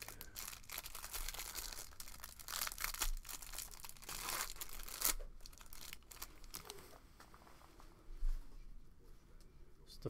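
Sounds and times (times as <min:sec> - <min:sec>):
wrapper tearing and crinkling: 0:00.0 - 0:06.8.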